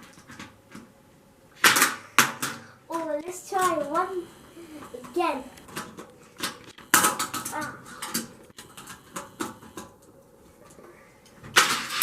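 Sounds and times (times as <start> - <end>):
toy car rattling on plastic track: 11.6 - 12.0.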